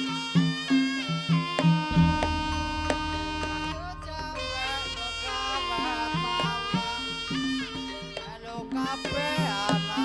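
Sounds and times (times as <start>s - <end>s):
repeated drum strokes: 1.5s - 10.0s
held low note: 1.9s - 8.2s
sliding bending melody: 1.9s - 8.2s.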